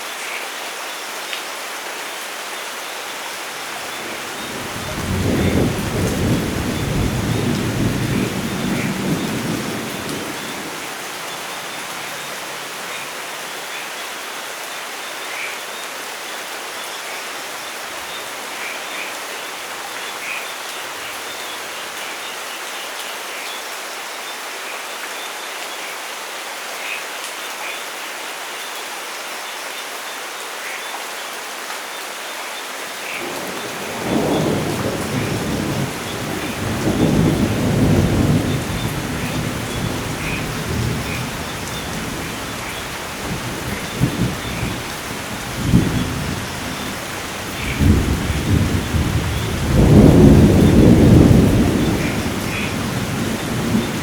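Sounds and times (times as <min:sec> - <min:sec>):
steady rain falling: 0:00.0 - 0:54.0
rolling thunder: 0:03.9 - 0:10.9, 0:33.3 - 0:54.0.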